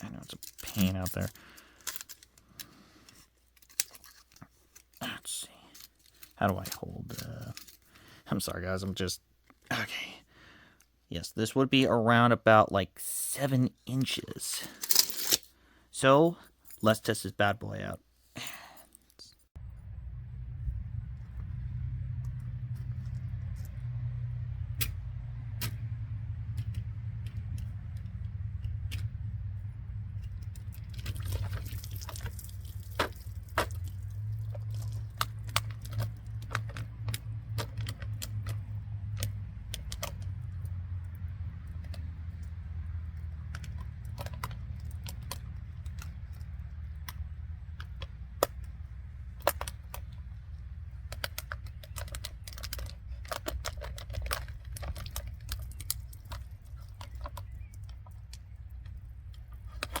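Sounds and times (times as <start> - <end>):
steady low hum: 19.5 - 60.0
plastic bottle crinkling: 30.3 - 40.4, 41.7 - 60.0.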